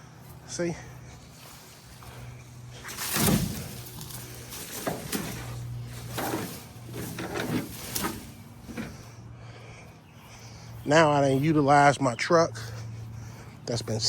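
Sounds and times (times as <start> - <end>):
branches rustling: 0.0 - 14.0
wooden limbs thudding: 1.3 - 9.1.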